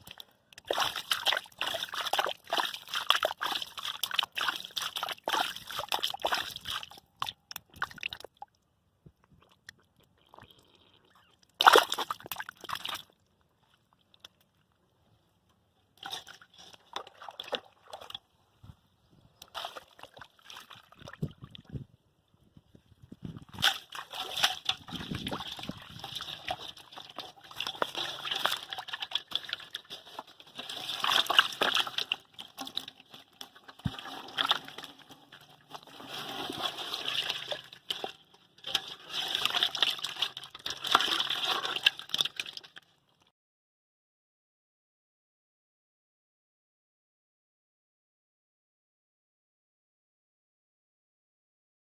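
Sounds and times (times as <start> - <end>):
muddy water sloshing and splashing: 0.0 - 8.5, 11.2 - 14.4, 16.0 - 18.4, 19.4 - 21.9, 23.2 - 42.8.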